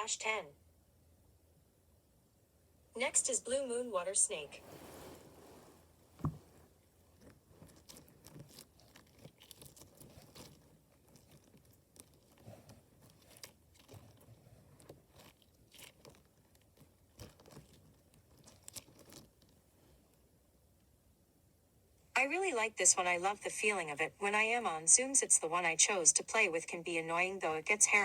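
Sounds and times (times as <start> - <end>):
plastic toy crackling when squeezed: 7.2 - 12.4, 15.1 - 19.6.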